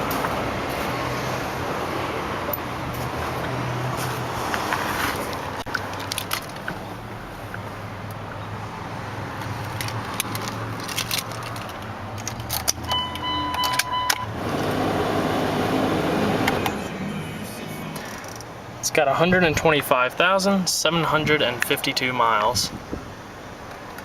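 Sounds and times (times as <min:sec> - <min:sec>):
diesel engine idling: 0:14.3 - 0:18.9.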